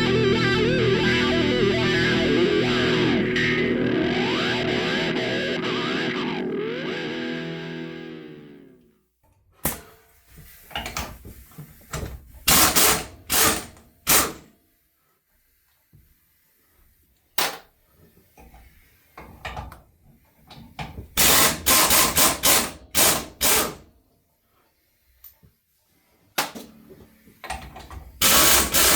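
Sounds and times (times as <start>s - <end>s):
power tool bursts: 12.5s - 14.4s, 21.2s - 23.8s, 28.2s - 28.9s.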